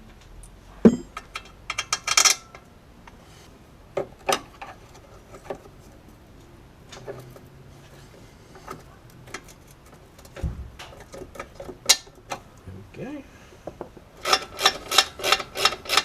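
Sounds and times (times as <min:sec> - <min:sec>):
metal tools clinking on steel: 0:00.8 - 0:02.7.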